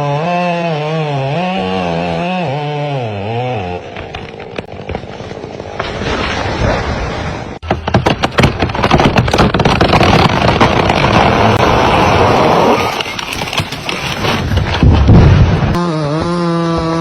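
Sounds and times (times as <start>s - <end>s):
chainsaw running: 0.0s - 4.7s, 15.8s - 17.0s
crackles and knocks: 3.9s - 7.0s, 7.6s - 12.0s, 12.8s - 15.8s.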